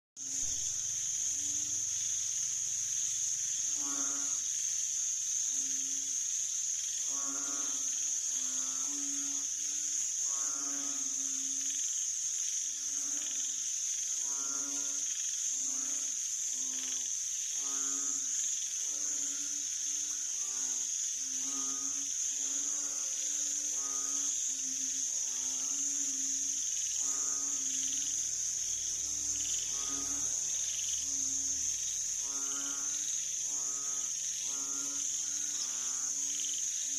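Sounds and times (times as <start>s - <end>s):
frogs calling: 0.2s - 36.9s
high insect trill: 0.2s - 36.9s.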